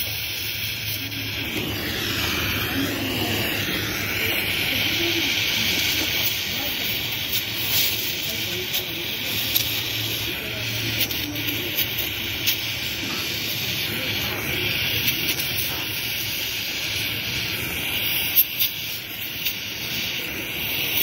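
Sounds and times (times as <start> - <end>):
welding arc hissing: 0.0 - 21.0
low hum: 1.0 - 6.5.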